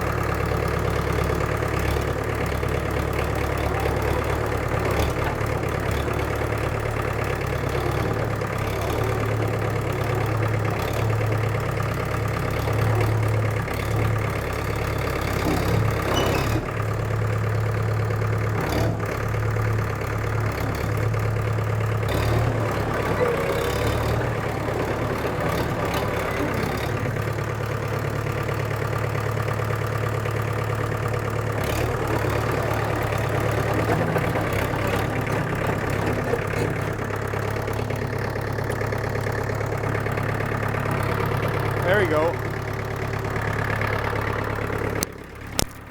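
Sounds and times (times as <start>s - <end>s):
bulldozer diesel engine running: 0.0s - 45.9s.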